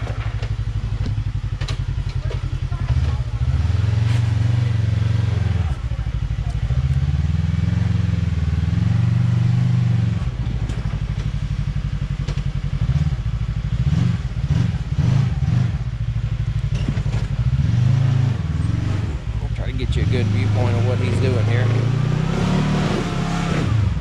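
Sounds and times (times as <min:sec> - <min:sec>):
utility vehicle engine running: 0:00.0 - 0:24.0
clatter and knocks: 0:16.7 - 0:17.5.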